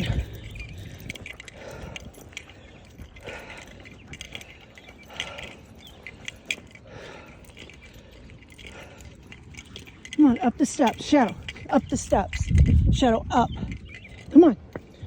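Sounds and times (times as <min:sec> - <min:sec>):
person breathing heavily: 0:00.0 - 0:11.8
light clicks and jingles: 0:00.0 - 0:15.0.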